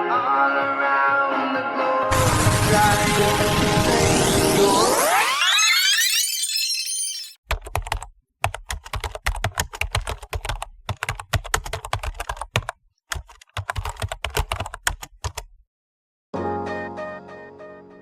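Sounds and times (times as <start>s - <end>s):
typing on keyboard: 7.5s - 15.6s.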